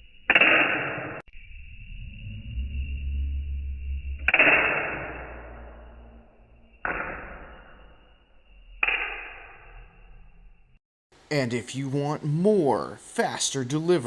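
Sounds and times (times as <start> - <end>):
toy launcher firing snaps: 0.3 - 1.2.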